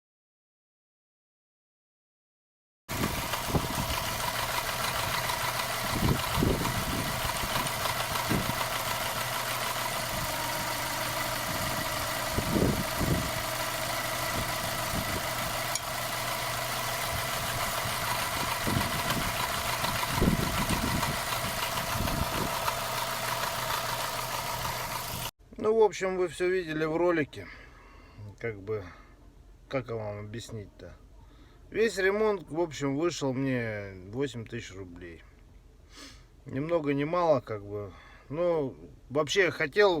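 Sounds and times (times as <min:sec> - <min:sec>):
car engine idling: 0:02.9 - 0:25.3
dull low thumps: 0:17.1 - 0:22.6.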